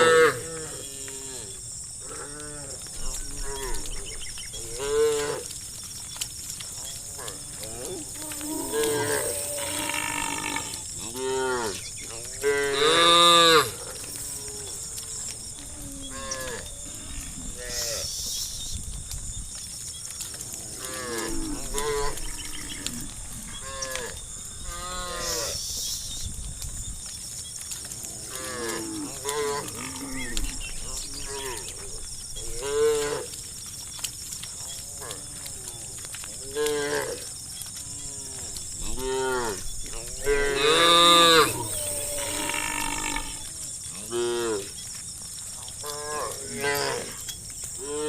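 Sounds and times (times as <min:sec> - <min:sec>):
cows mooing: 0:00.0 - 0:03.9, 0:06.9 - 0:18.1, 0:20.4 - 0:25.6, 0:37.9 - 0:44.7.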